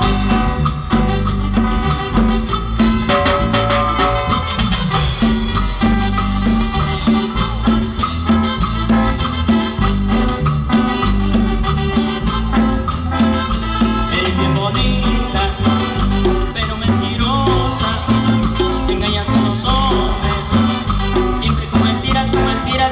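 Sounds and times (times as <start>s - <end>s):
live latin dance band playing: 0.0s - 22.9s.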